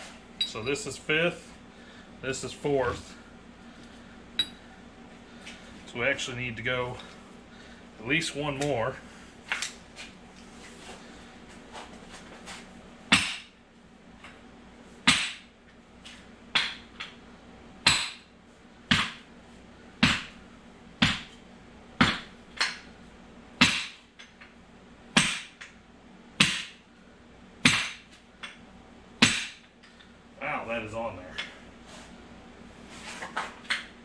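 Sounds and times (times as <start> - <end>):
hammer blows with metallic ring: 4.4 - 4.6.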